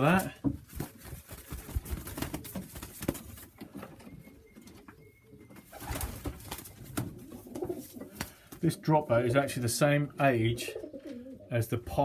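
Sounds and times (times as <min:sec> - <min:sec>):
pigeons cooing: 0:03.6 - 0:09.0, 0:10.4 - 0:11.5.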